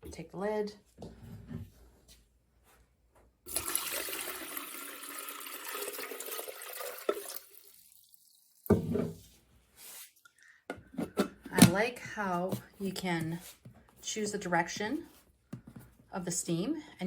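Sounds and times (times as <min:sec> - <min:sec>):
water pouring and splashing: 0:03.5 - 0:08.8.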